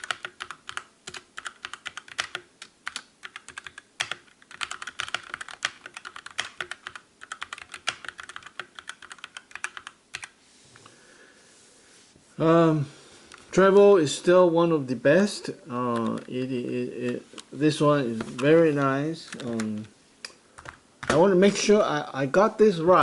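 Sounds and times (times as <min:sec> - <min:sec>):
mechanical keyboard typing: 0:00.0 - 0:10.3, 0:15.9 - 0:16.3, 0:19.2 - 0:19.9, 0:20.6 - 0:21.2.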